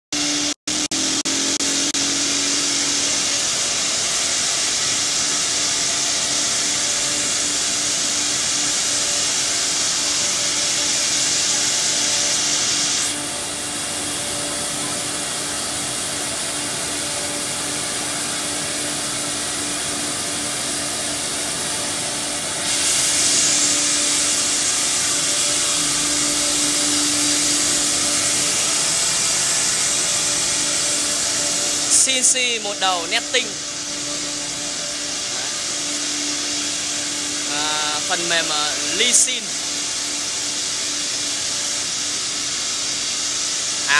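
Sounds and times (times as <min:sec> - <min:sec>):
cnc router running: 0:00.2 - 0:43.9
high hiss: 0:00.2 - 0:43.9.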